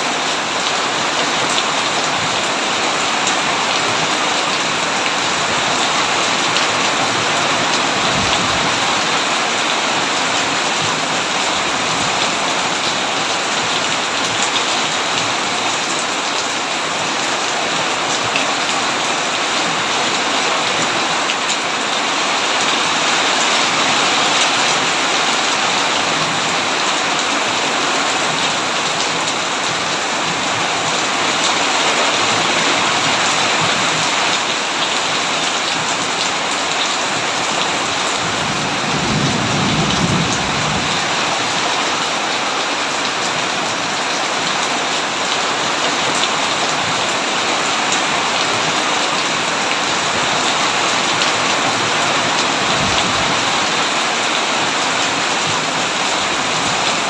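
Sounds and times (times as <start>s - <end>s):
heavy rain on a tin roof: 0.0s - 57.0s
distant thunder rumble: 38.4s - 41.2s.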